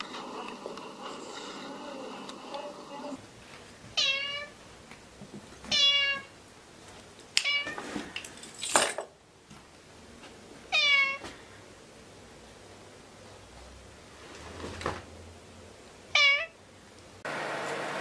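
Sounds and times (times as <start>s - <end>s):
cat meowing: 4.0s - 4.5s, 5.7s - 6.3s, 10.7s - 11.2s, 16.1s - 16.6s.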